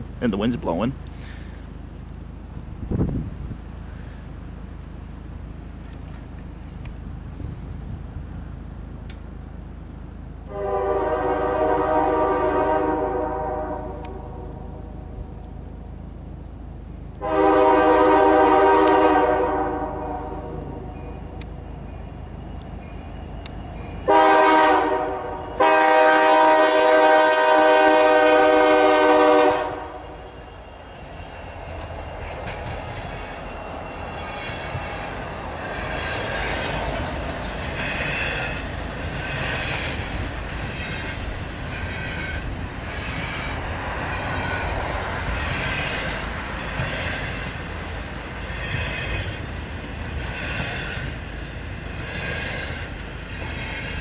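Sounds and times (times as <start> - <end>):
train cars rumbling past: 0.0 - 54.0
locomotive air horn blasts: 10.5 - 15.1, 17.2 - 20.9, 24.0 - 30.3
wheels clattering over rail joints: 28.4 - 54.0.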